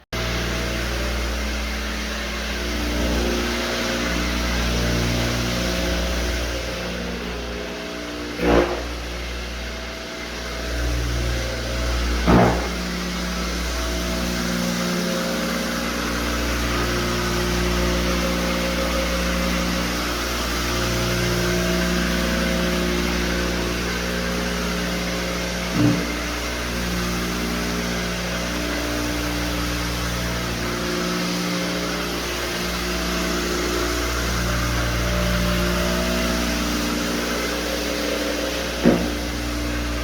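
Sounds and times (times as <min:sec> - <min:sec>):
electric floor buffer running: 0:00.2 - 0:40.0
short knocks: 0:12.3 - 0:12.9.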